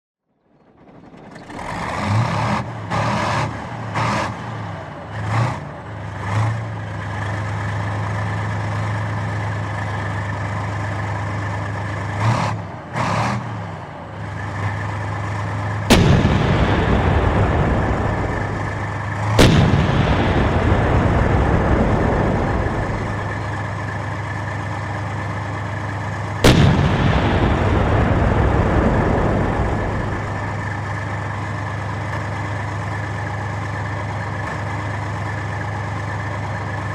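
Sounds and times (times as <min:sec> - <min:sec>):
tank engine revving: 0:00.5 - 0:36.9
tank gun firing: 0:15.8 - 0:24.9, 0:26.3 - 0:31.7.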